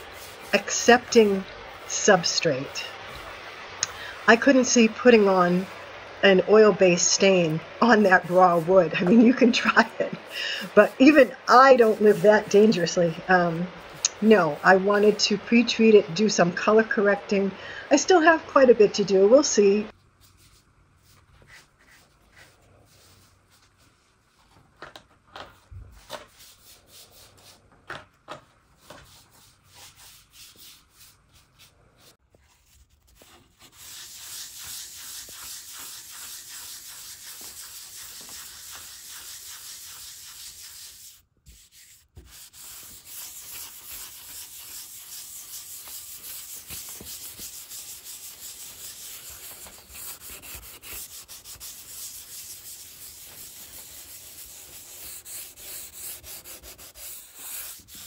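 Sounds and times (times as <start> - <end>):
sandpaper rubbing over wood: 0.0 - 3.7, 7.2 - 15.3, 28.8 - 58.0.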